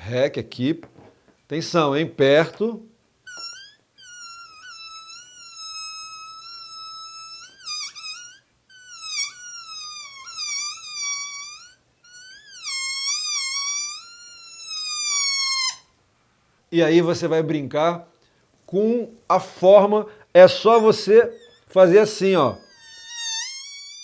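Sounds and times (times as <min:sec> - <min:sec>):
balloon squealing: 0:03.2 - 0:16.0, 0:19.4 - 0:24.0.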